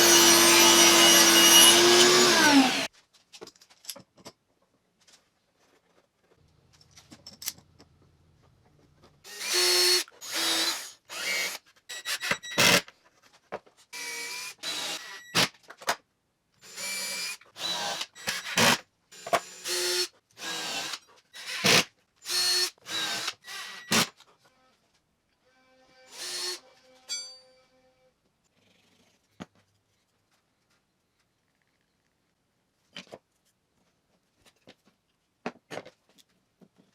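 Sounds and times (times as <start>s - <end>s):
power drill whining in bursts: 0.0s - 2.9s.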